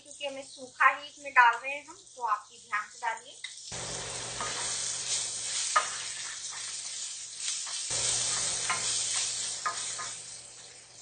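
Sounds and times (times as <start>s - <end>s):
food sizzling in hot oil: 0.0s - 11.0s.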